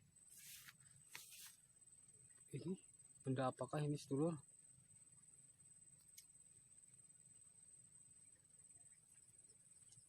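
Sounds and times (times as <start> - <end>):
faint low hum: 0.0 - 10.0
faint click: 6.0 - 6.3.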